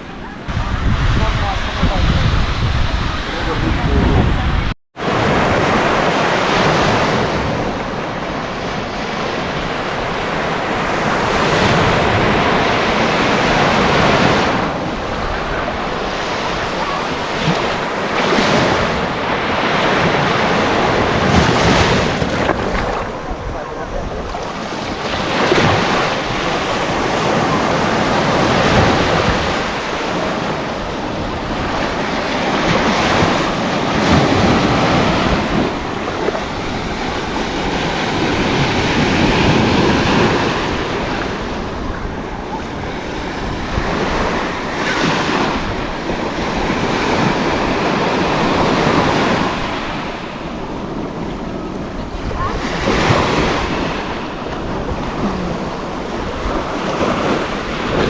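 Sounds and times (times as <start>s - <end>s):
sea waves breaking on beach: 0.0s - 58.0s
wind buffeting microphone: 0.0s - 58.0s.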